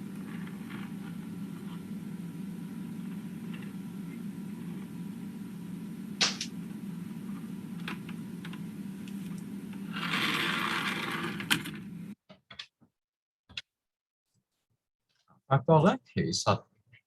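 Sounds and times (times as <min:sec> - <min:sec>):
steady low hum: 0:00.0 - 0:12.2.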